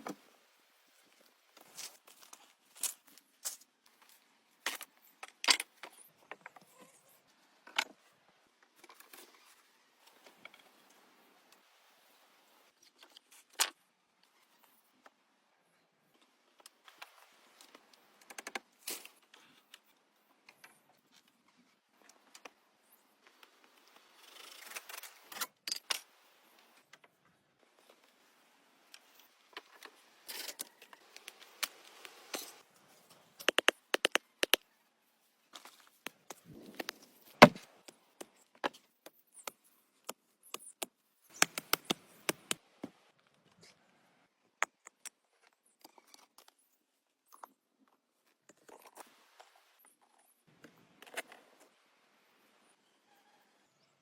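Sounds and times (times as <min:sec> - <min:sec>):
knocks and clicks on wood: 0:33.4 - 0:34.6.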